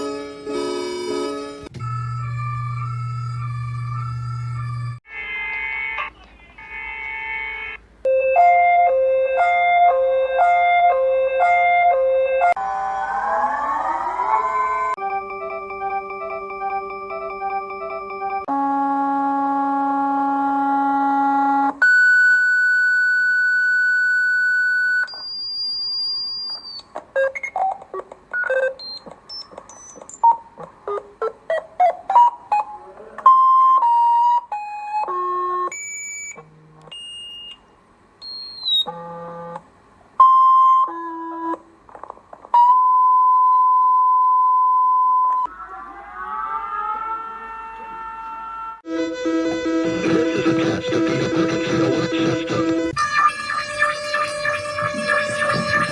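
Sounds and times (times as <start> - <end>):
buzzy electronic tone: 1.8 - 5.9, 48.9 - 55.9
tones gliding upward: 12.3 - 18.4, 45.5 - 47.7, 51.8 - 55.9.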